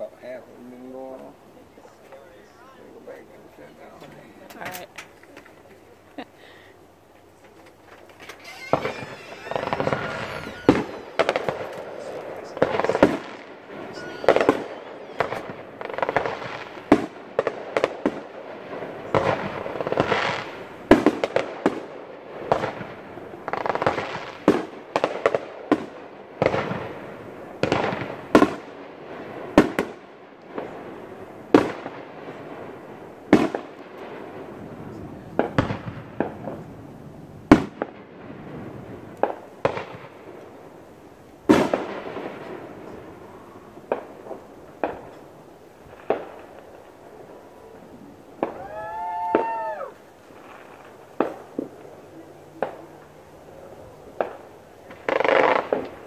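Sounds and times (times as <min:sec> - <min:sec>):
fireworks bangs: 0:00.0 - 0:56.0
fireworks crackling hiss: 0:00.0 - 0:56.0.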